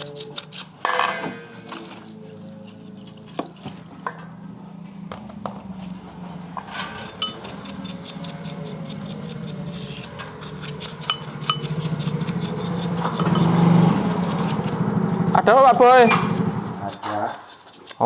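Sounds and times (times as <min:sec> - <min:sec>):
steady low hum: 0:00.0 - 0:17.0
metal tools clinking and tapping: 0:00.8 - 0:02.0, 0:13.0 - 0:13.6.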